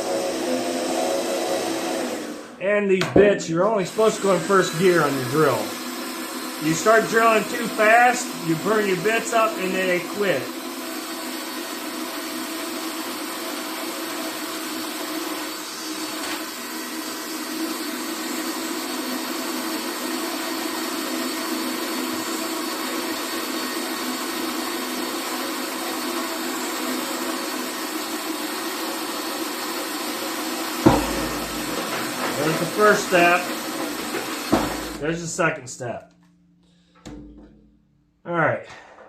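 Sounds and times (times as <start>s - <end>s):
power drill cutting into metal: 0.0s - 35.4s
sharp knock: 3.0s - 3.5s, 30.8s - 38.0s.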